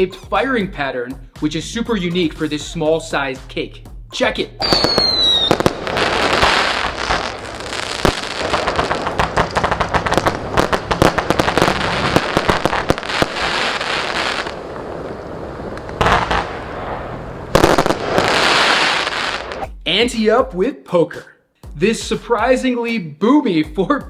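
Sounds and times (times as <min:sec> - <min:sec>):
fireworks firing rapid volleys: 0:04.6 - 0:19.6.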